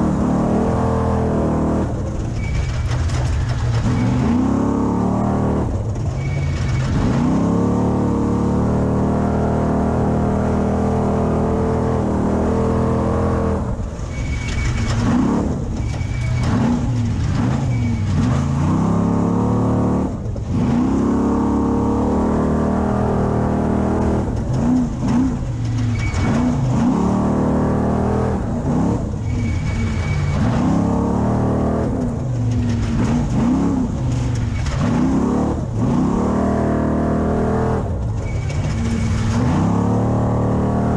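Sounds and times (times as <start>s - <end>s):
truck engine revving: 0.0s - 40.9s.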